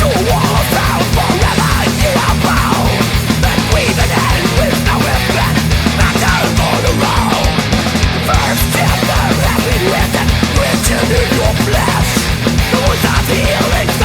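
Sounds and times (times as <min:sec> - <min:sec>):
heavy rock band playing: 0:00.0 - 0:14.0.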